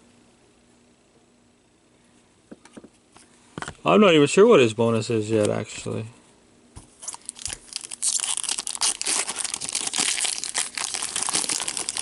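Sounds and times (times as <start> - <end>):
wrapper torn and crinkled: 7.0 - 12.0.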